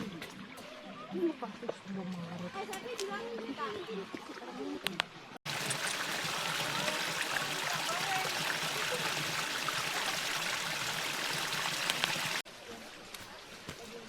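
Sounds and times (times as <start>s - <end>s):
mountain stream rushing: 5.5s - 12.4s.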